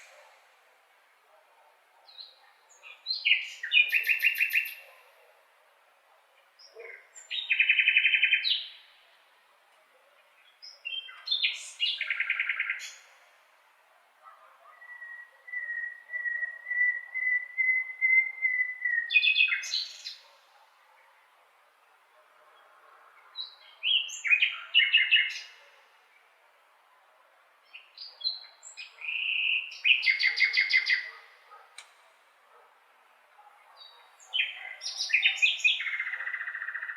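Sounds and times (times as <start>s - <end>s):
blackbird singing: 2.1s - 5.0s, 6.6s - 9.0s, 10.4s - 13.2s, 14.6s - 20.5s, 23.4s - 25.7s, 27.7s - 31.6s, 33.7s - 36.9s.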